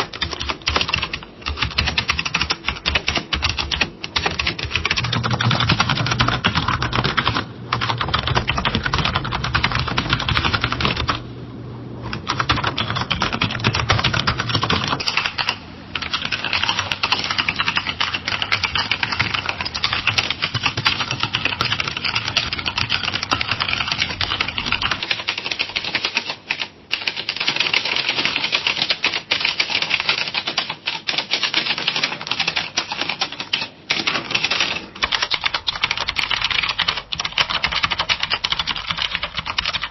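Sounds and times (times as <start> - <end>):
fast typing on keyboard: 0.0 - 11.2, 12.1 - 39.9
steady low hum: 0.0 - 27.2.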